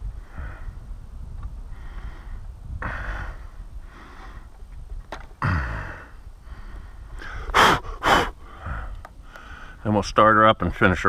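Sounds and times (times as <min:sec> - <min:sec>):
low rumble: 0:00.0 - 0:07.3
man sighing: 0:05.4 - 0:06.2
sharp breathy puffs: 0:06.4 - 0:09.8.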